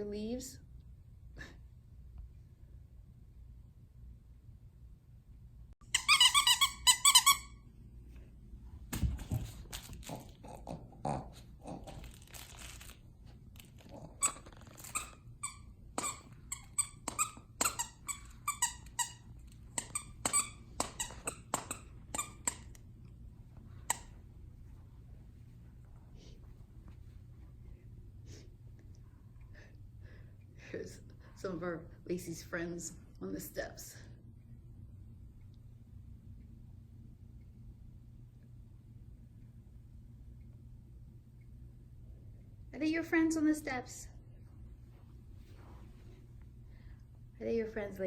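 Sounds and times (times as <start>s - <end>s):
dog chewing squeaky toy: 5.8s - 7.6s, 13.9s - 22.8s
toy crinkling and rustling: 9.2s - 10.4s, 11.7s - 15.3s.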